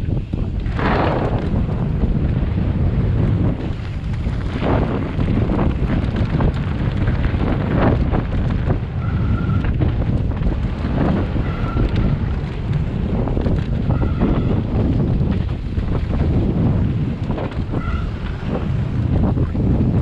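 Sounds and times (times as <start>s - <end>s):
bike rattling and knocking: 0.0s - 20.0s
wind rushing over microphone: 0.0s - 20.0s
high-pitched squeals: 11.4s - 12.0s.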